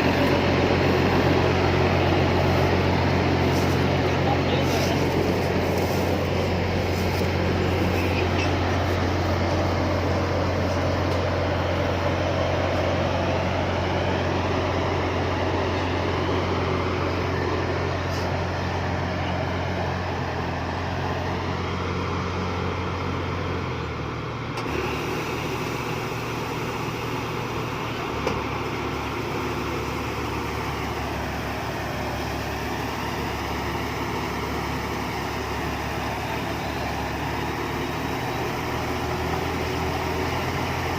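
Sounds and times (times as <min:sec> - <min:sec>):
harvester engine humming: 0:00.0 - 0:40.9.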